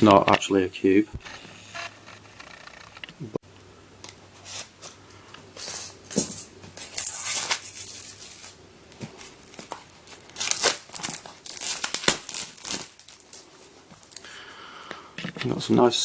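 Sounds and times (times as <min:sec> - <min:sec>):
packaging crinkling and tearing: 0:06.7 - 0:14.3.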